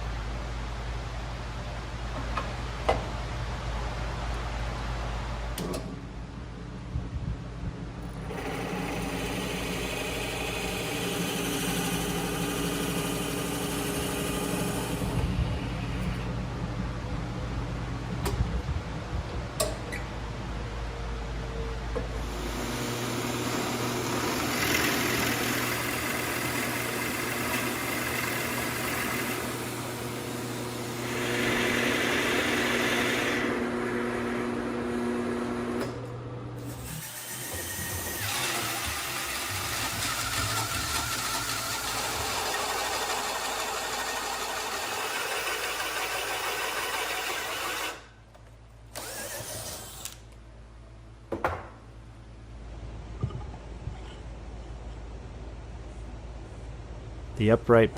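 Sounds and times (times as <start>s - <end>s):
power tool motor humming: 8.3s - 15.2s, 22.2s - 34.4s, 36.8s - 48.0s, 49.0s - 50.2s
cutting or drilling noise: 8.3s - 16.1s, 22.2s - 35.3s, 36.6s - 48.1s, 48.9s - 50.3s.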